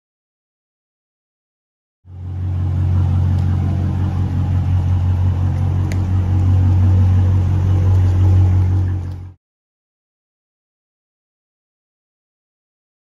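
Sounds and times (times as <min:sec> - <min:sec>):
car engine deep exhaust rumble: 0:02.1 - 0:09.4.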